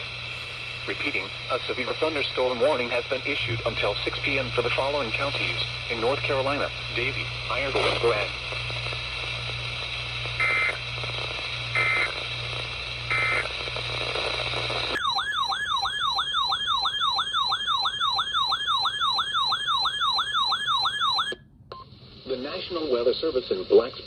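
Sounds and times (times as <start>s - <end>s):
radio static: 0.0s - 15.0s
warbling siren-like alert tone: 15.0s - 21.4s.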